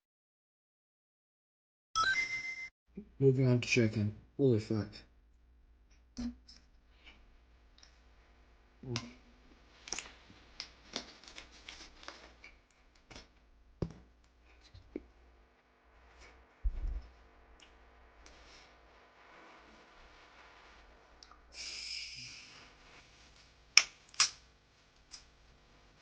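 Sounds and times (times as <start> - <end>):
dull low thump: 16.6 - 17.1.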